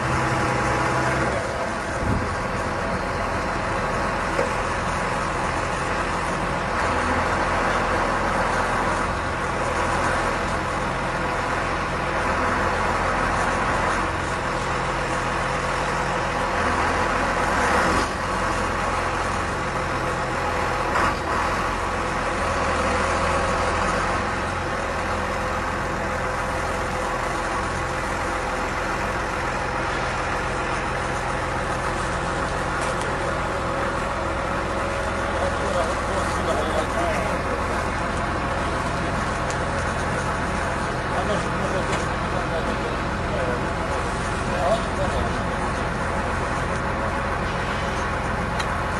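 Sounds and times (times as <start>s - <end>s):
tractor diesel engine running: 0.0s - 48.9s.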